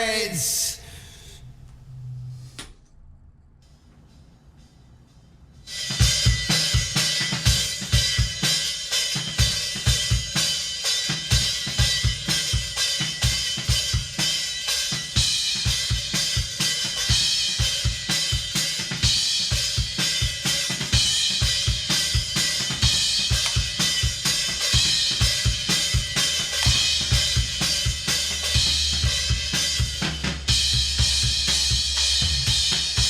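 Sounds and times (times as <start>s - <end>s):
drum kit playing fast rock beat: 5.7s - 33.0s.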